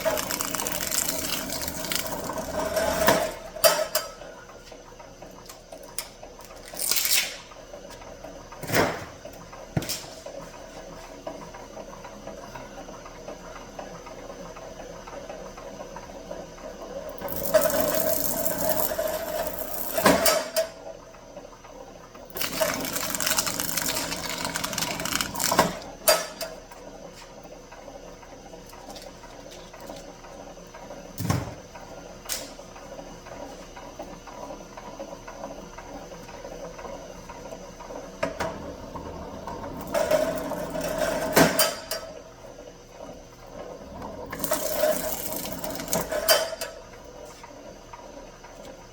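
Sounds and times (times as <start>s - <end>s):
wire stripping machine humming: 0.0s - 4.8s, 16.9s - 21.0s, 22.2s - 33.1s, 37.5s - 42.5s, 43.6s - 48.9s.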